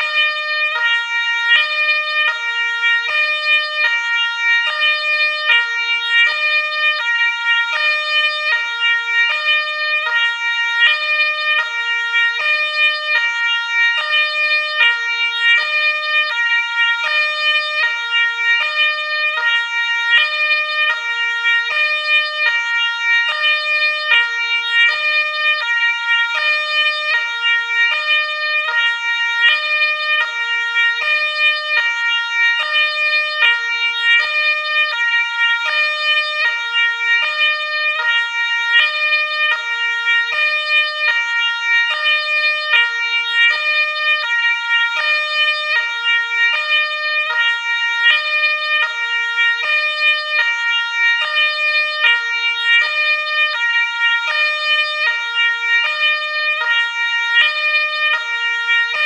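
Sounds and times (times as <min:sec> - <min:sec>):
two-tone ambulance siren: 0:00.0 - 0:59.0.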